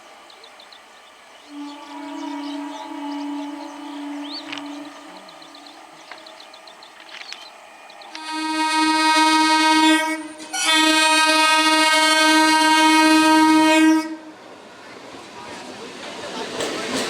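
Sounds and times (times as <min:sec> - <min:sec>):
train horn blasts: 0:01.4 - 0:06.5, 0:08.1 - 0:14.5.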